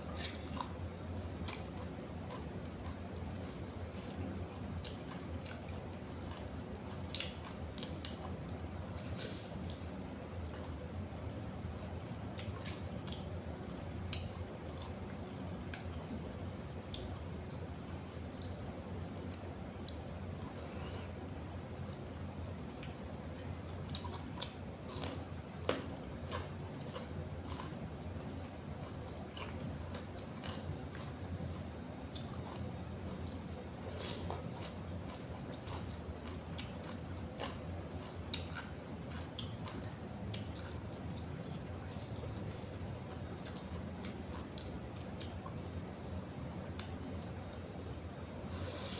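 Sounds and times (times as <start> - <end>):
steady low hum: 0.0 - 48.9
moist chewing and squishing: 22.8 - 45.6.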